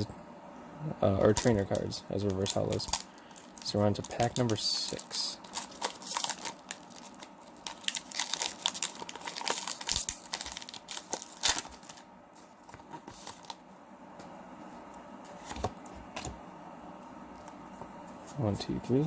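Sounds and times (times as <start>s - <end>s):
foil wrapper tearing and crinkling: 1.2s - 12.1s.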